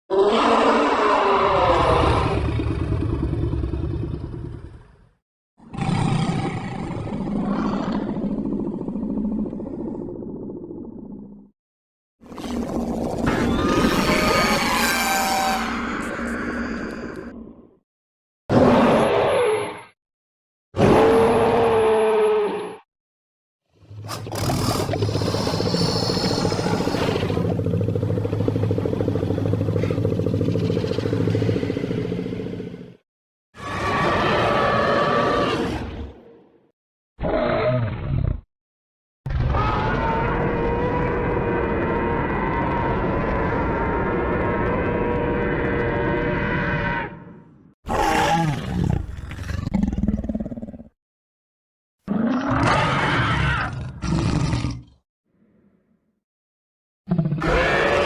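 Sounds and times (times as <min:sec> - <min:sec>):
creature growls: 0:00.1 - 0:05.0, 0:05.6 - 0:11.3, 0:12.4 - 0:17.8, 0:33.6 - 0:36.3, 0:39.3 - 0:51.0, 0:52.1 - 0:55.0, 0:57.1 - 0:58.0
dinosaur growl rattling rumble: 0:24.4 - 0:32.9.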